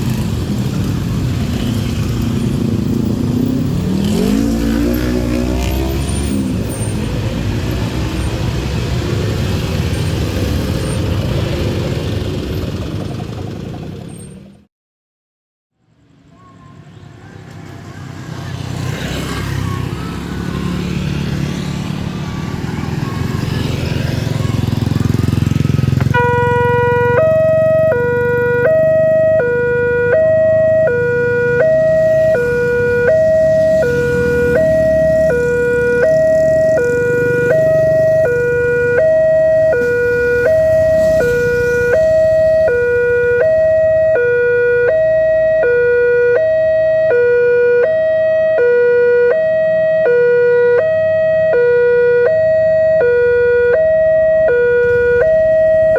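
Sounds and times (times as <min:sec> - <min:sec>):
road traffic rumbling: 0:00.0 - 0:14.7, 0:15.8 - 0:55.9
two-tone crossing alarm chime: 0:26.2 - 0:55.9.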